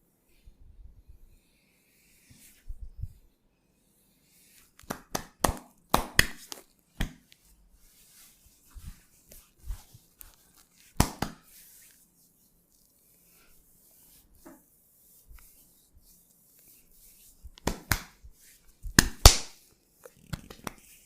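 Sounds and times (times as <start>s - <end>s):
soft pats on skin: 4.3s - 21.0s
hands slapping skin: 4.8s - 7.4s, 10.2s - 11.5s, 17.5s - 18.2s, 18.9s - 19.6s, 20.2s - 20.9s.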